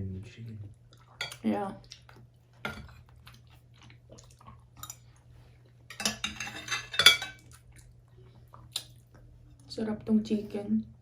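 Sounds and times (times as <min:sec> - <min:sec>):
cutlery clinking on dishes: 0:05.9 - 0:07.5.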